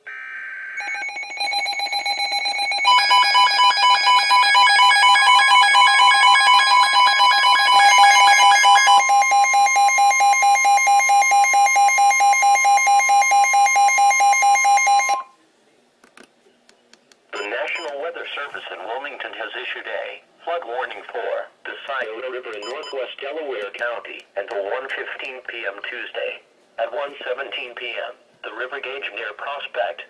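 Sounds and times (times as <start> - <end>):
data burst tones: 17.4 - 17.9.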